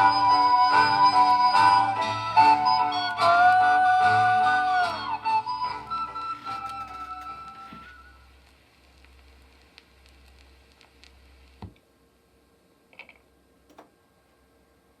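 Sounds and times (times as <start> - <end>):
faint equipment hum: 0.0 - 15.0
switch thump: 13.7 - 13.9.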